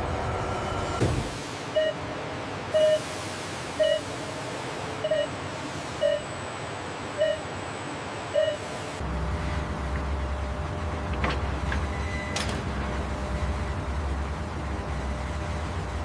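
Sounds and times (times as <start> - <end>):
electronic warning beeps: 2.8 - 3.0, 3.8 - 4.1, 5.0 - 5.4, 6.0 - 6.3, 7.2 - 7.4, 8.3 - 8.7.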